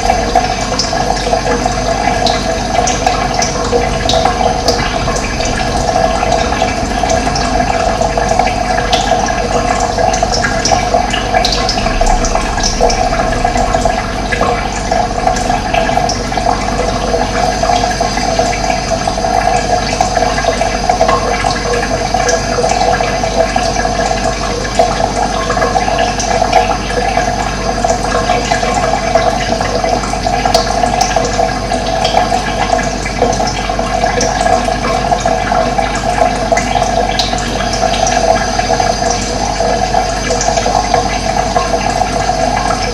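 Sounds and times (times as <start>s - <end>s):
running water rushing: 0.0s - 42.9s.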